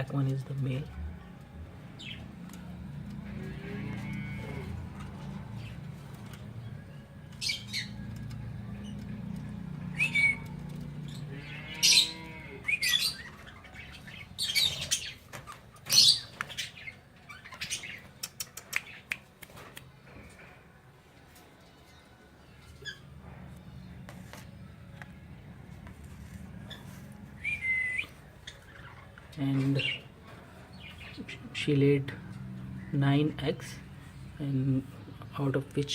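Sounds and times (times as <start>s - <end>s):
cockatiels squawking and chirping: 9.9s - 18.1s.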